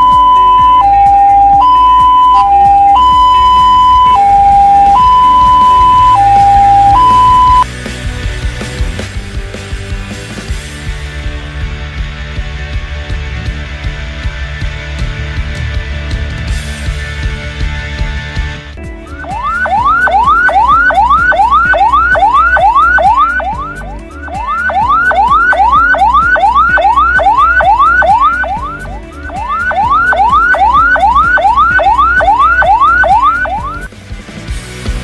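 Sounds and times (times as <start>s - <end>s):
ambulance siren whooping: 0.0s - 7.6s, 19.1s - 33.9s.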